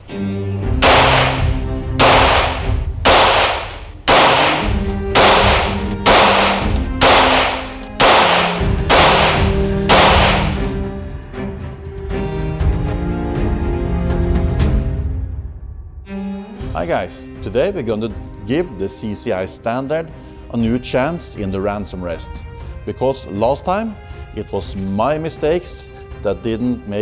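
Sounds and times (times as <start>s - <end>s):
music with held low notes: 0.0s - 14.8s
sharp cracks: 0.8s - 10.8s.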